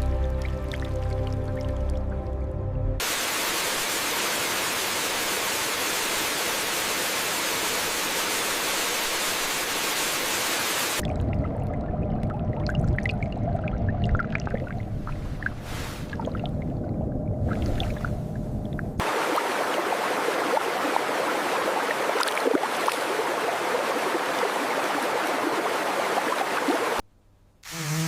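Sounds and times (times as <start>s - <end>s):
rushing water hiss: 3.0s - 11.0s, 15.2s - 16.3s, 19.0s - 27.0s
low rumble: 11.0s - 19.0s.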